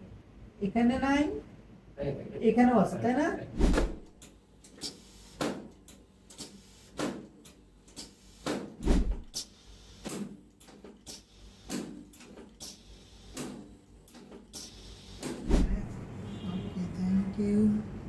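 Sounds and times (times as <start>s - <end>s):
thumps and knocks on couch: 3.6s - 4.1s, 8.8s - 9.4s, 15.4s - 15.9s.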